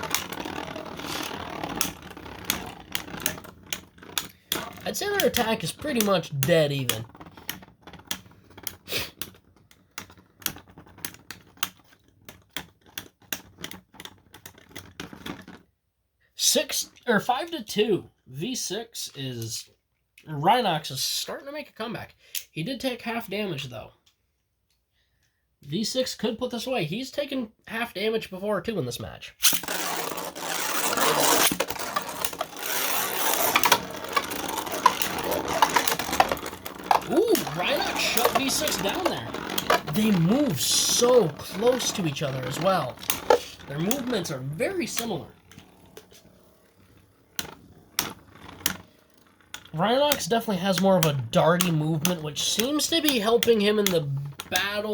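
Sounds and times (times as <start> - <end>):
spinning tops clashing: 0.0 - 3.6, 29.4 - 49.5.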